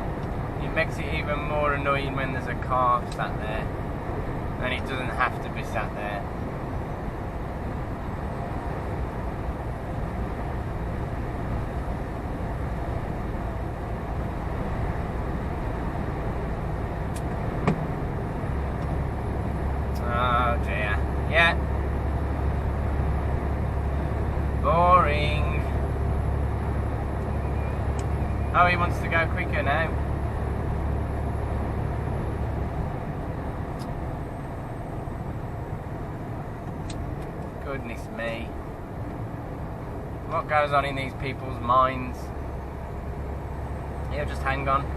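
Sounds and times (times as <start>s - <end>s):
lorry engine and road noise: 0.0s - 44.9s
sharp click in cab: 17.1s - 17.9s, 33.7s - 34.0s, 36.6s - 37.6s.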